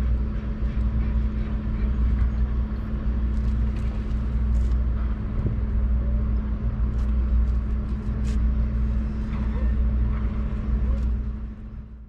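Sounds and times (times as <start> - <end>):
steady low rumble with hum: 0.0 - 12.0.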